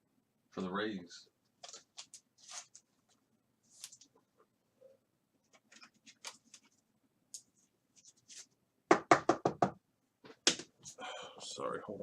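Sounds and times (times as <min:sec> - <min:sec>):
cards being handled: 0:01.6 - 0:04.1, 0:05.5 - 0:08.5.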